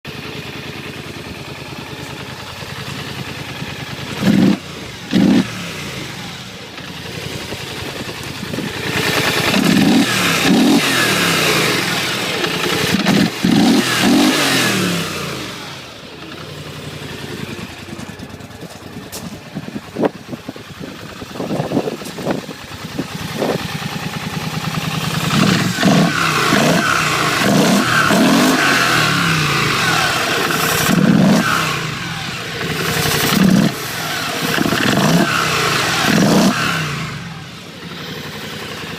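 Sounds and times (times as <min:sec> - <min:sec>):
engine running and revving: 0:00.0 - 0:38.9.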